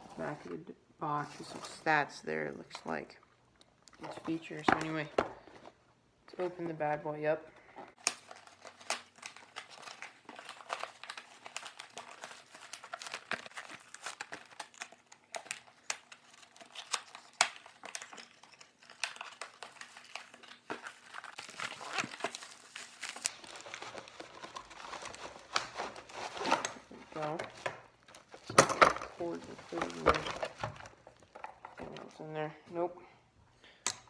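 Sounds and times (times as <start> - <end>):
packaging crinkling and rustling: 7.9 - 32.1.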